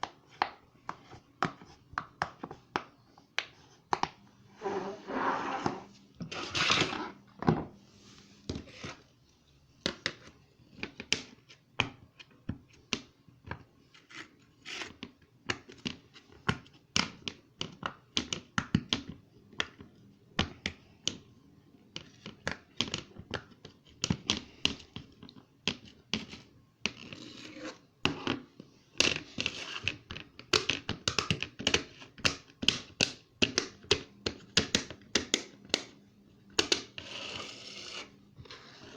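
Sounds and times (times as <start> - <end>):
scratchy rubbing: 4.5 - 7.1, 37.0 - 38.9.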